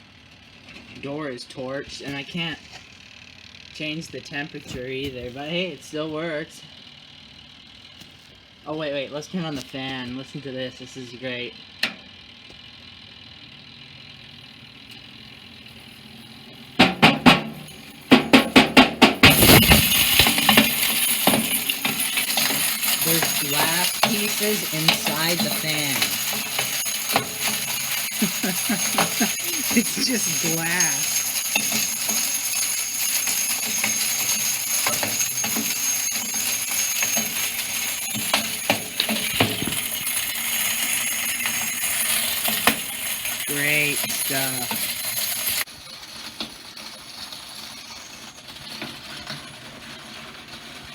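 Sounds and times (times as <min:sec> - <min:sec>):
toaster oven fan humming: 0:00.0 - 0:50.9
broken glass rattling: 0:16.6 - 0:49.2.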